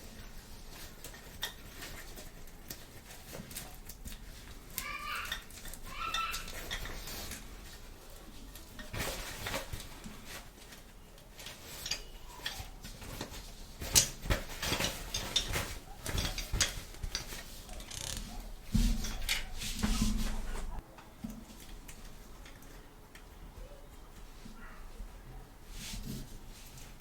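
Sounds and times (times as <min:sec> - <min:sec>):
plastic toy pieces clicking: 0:17.2 - 0:18.3.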